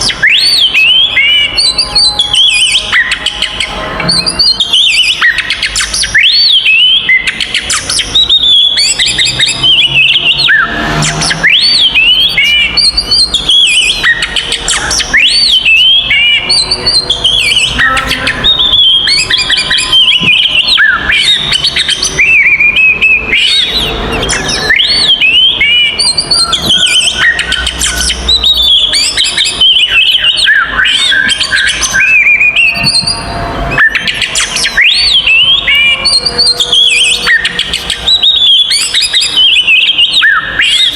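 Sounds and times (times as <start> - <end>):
songbird singing whistles and chirps: 0.0 - 40.9.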